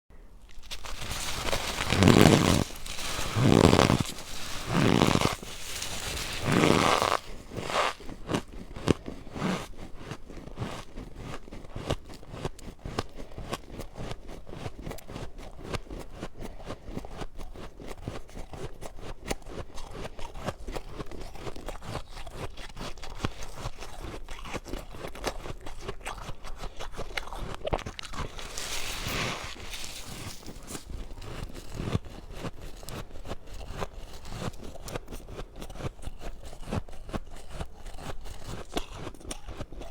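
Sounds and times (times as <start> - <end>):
loud crunching bites of ice: 0.4 - 9.0, 26.9 - 34.6
fine crackling of chewed ice: 0.4 - 39.9.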